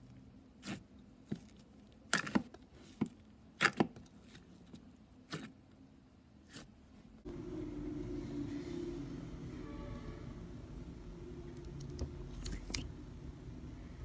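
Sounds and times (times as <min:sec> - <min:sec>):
steady low hum: 0:07.1 - 0:14.0.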